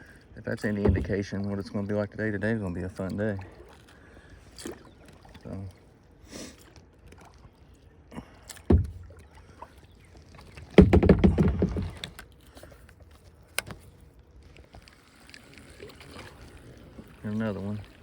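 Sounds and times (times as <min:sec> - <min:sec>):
knocks against a kayak: 0:00.7 - 0:01.2, 0:08.6 - 0:09.1, 0:10.6 - 0:12.2.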